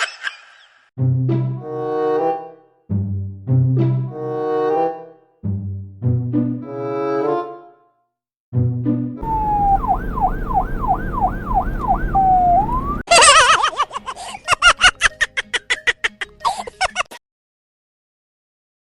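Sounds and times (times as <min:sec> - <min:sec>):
electronic siren: 0:09.2 - 0:13.1.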